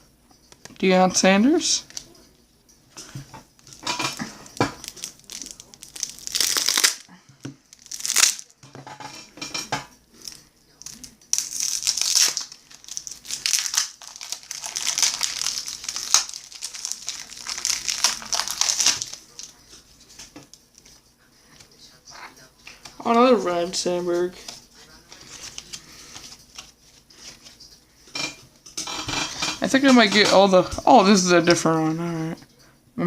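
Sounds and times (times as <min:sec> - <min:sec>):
wrapper crinkling and rustling: 0:03.6 - 0:08.6, 0:10.2 - 0:21.0, 0:24.4 - 0:27.7.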